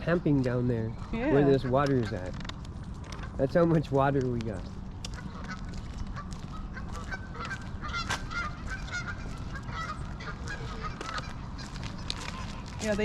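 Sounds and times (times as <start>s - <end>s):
geese honking: 0.8s - 2.4s, 5.1s - 13.0s.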